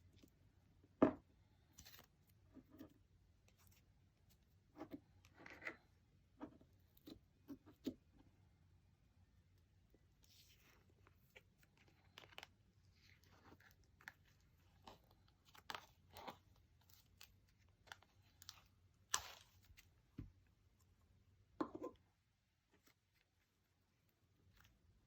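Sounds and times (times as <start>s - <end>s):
slime squishing: 10.1s - 20.8s.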